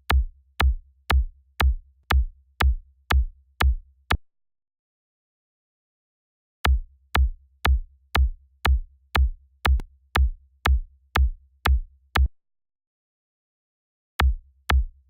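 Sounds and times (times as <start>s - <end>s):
electronic kick drum beat: 0.0s - 3.8s, 6.7s - 12.3s, 14.2s - 15.0s.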